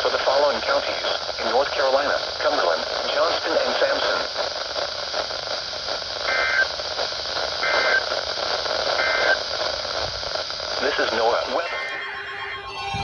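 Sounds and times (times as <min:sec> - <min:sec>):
radio static and hiss: 0:00.0 - 0:04.8
two-tone data bursts: 0:11.1 - 0:13.0.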